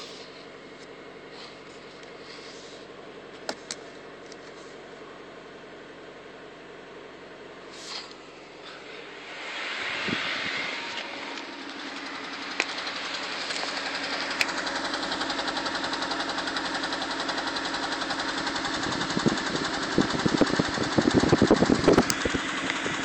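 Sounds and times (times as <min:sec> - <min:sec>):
car engine running: 0:00.0 - 0:23.0
engine misfire thuds: 0:10.0 - 0:23.0.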